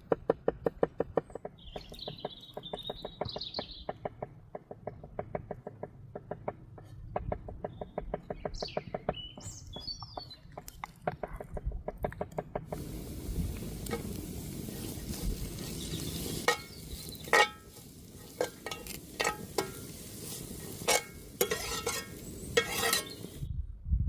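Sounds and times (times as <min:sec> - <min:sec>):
food sizzling over fire: 0:12.6 - 0:23.5.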